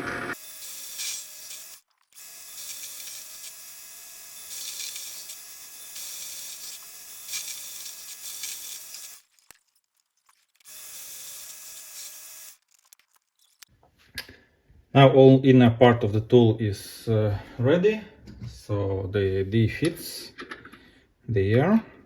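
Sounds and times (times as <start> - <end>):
lathe tool cutting metal: 0.0 - 9.2.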